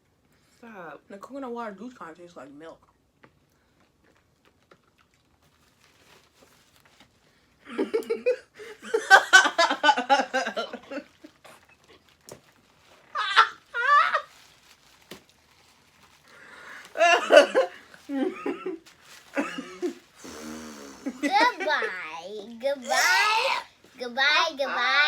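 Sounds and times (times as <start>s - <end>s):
people laughing hard: 7.8s - 11.0s
vocal squeals: 22.8s - 23.7s.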